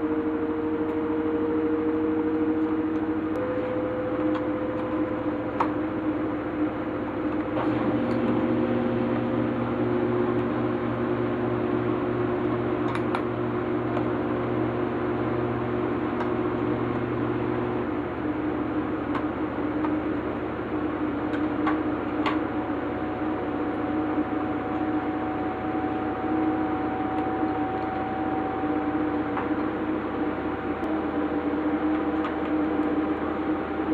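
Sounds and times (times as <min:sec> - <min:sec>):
steady machine hum: 0:00.0 - 0:33.9.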